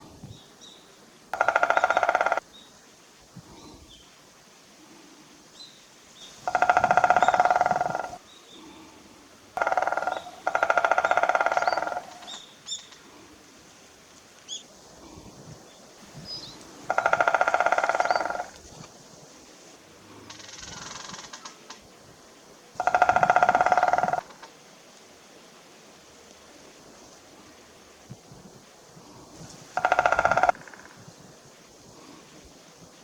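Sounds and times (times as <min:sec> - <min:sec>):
woodpecker drumming on wood: 0:01.3 - 0:02.5, 0:06.4 - 0:08.2, 0:09.6 - 0:12.4, 0:16.8 - 0:18.6, 0:22.8 - 0:24.6, 0:29.7 - 0:31.1
small birds chirping: 0:05.5 - 0:08.9, 0:10.0 - 0:13.0.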